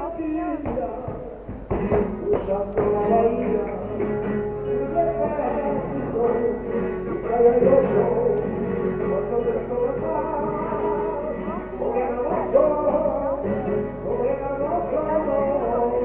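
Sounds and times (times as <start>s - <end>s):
flamenco guitar: 0.0s - 16.0s
person singing: 0.0s - 16.0s
sharp knocks: 0.7s - 4.4s.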